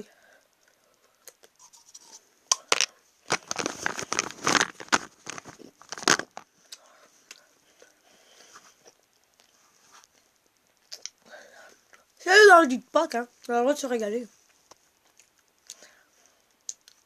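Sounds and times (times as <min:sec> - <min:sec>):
wrapper crinkling and tearing: 0:02.7 - 0:06.5.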